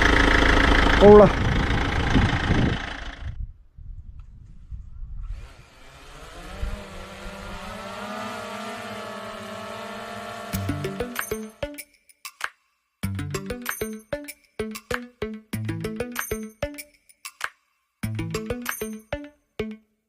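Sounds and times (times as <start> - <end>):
motorhome engine running: 0.0 - 3.4, 6.0 - 11.6.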